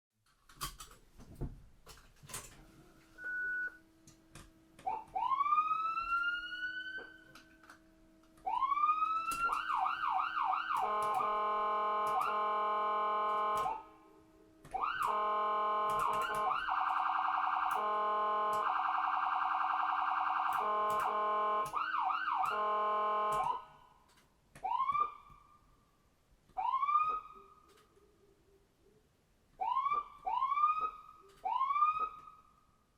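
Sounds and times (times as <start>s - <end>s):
electronic ambulance siren: 4.8s - 7.5s, 8.4s - 13.9s, 14.7s - 23.8s, 24.6s - 25.5s, 26.6s - 27.6s, 29.6s - 32.4s.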